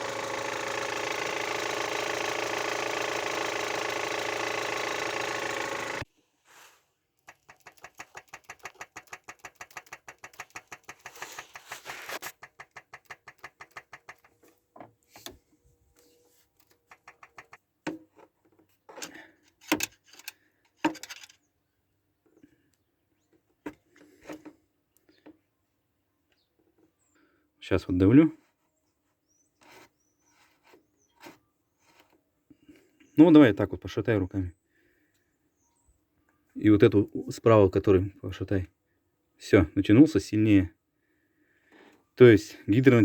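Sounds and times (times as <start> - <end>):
fast run of clicks: 0.0 - 6.0, 7.2 - 14.5, 16.6 - 17.7
petrol engine running with a knock: 0.0 - 6.0, 12.4 - 14.4
scattered knocks and clicks: 7.2 - 15.4, 16.6 - 18.0.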